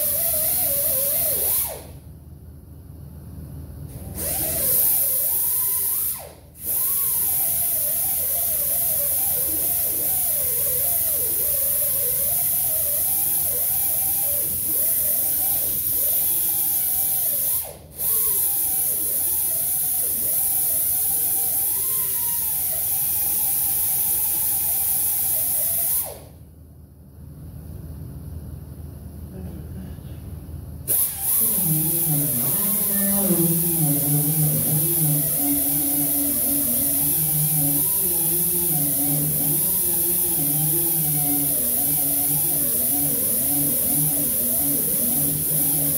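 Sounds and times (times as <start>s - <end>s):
grinder sanding sheet metal: 4.1s - 26.0s, 30.9s - 45.9s.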